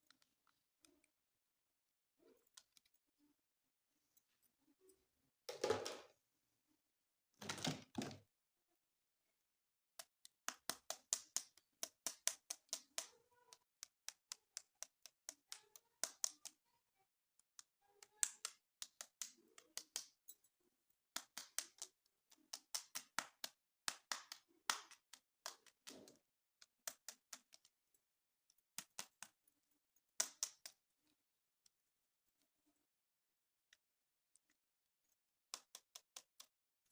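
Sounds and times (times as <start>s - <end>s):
plastic toys clicking and tapping: 10.0s - 16.6s, 17.4s - 20.4s, 21.2s - 27.8s, 28.5s - 29.4s, 30.2s - 30.8s, 35.5s - 36.6s.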